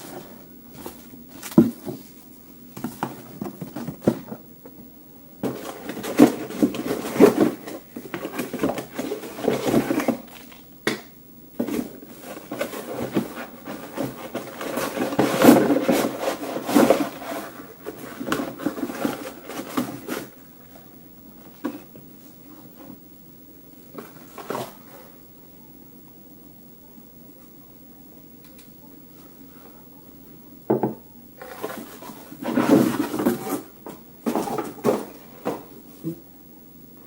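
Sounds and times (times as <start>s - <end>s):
packaging rustling and scraping: 0.0s - 4.4s, 5.4s - 10.6s, 11.6s - 20.5s, 31.4s - 35.7s.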